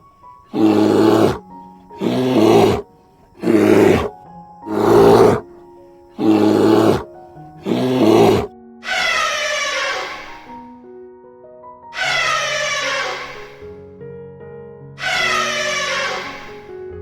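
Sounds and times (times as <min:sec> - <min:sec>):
soft background music: 0:00.0 - 0:08.9, 0:13.0 - 0:17.0
animal harsh calls: 0:00.5 - 0:04.1, 0:04.7 - 0:05.4, 0:06.2 - 0:10.6, 0:12.0 - 0:13.7, 0:15.0 - 0:16.8.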